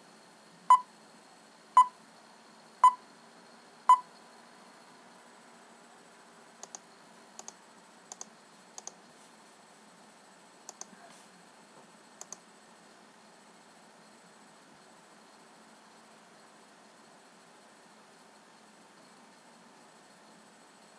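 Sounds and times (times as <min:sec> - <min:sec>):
computer mouse clicking: 0:06.6 - 0:06.8, 0:07.4 - 0:09.0, 0:10.7 - 0:11.0, 0:12.2 - 0:12.4.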